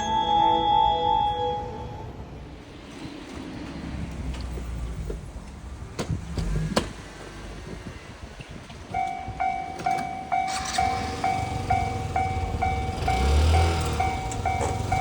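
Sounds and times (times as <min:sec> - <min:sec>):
railroad crossing warning bell: 0:00.0 - 0:02.4, 0:08.9 - 0:15.0
low street traffic rumble: 0:00.9 - 0:15.0.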